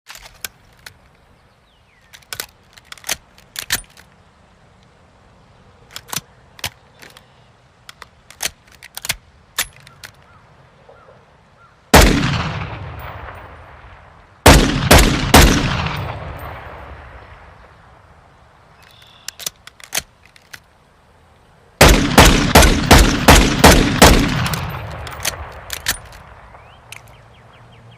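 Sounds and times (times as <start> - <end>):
metallic gun handling clicks: 0.1 - 1.2, 2.0 - 4.2, 5.9 - 10.3, 18.8 - 20.7, 24.2 - 27.2
gunshot with echoing tail: 12.0 - 13.7, 14.5 - 17.2, 21.8 - 25.7.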